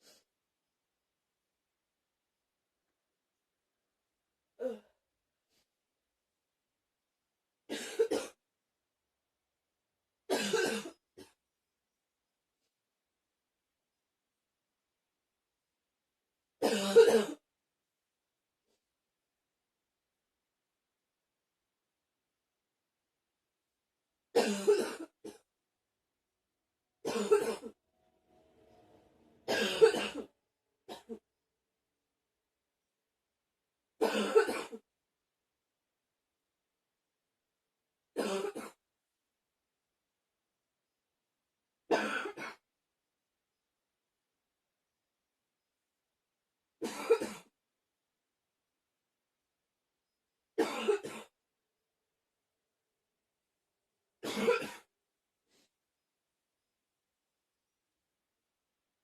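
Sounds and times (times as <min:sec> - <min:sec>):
person coughing: 0:07.7 - 0:08.4, 0:10.3 - 0:11.4, 0:16.6 - 0:17.4, 0:24.4 - 0:25.5, 0:27.1 - 0:27.8, 0:29.5 - 0:30.3, 0:34.0 - 0:34.8, 0:38.2 - 0:38.8, 0:41.9 - 0:42.6, 0:46.8 - 0:47.5, 0:50.6 - 0:51.3, 0:54.2 - 0:54.9.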